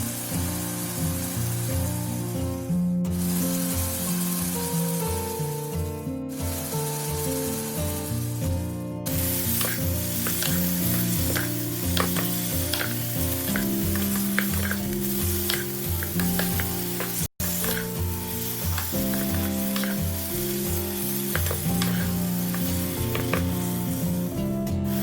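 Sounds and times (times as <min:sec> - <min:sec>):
background music: 0:00.0 - 0:25.0
food sizzling in hot oil: 0:00.0 - 0:25.0
utensil clicking against pot: 0:09.6 - 0:18.0, 0:21.4 - 0:23.6.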